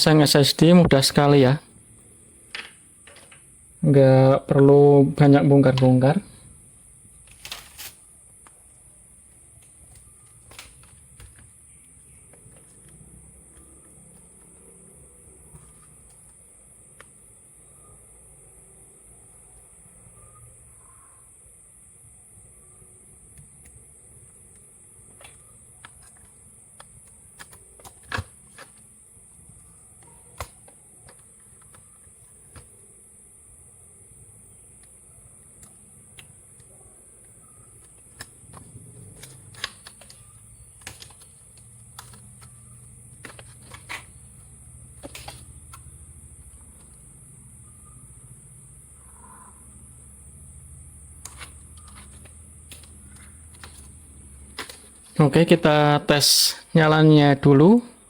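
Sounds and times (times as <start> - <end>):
laptop handling clicks and taps: 9.6 - 14.7, 23.3 - 28.9, 30.0 - 32.8, 34.8 - 47.0, 51.2 - 55.2.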